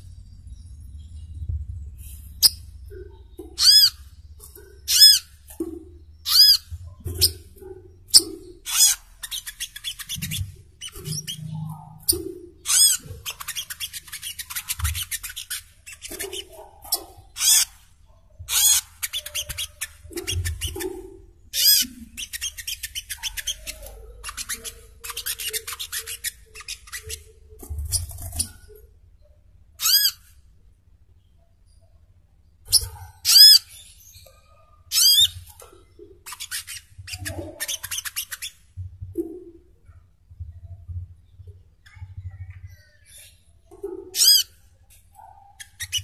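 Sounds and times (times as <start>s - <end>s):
faint low thumps: 0.1s - 4.4s.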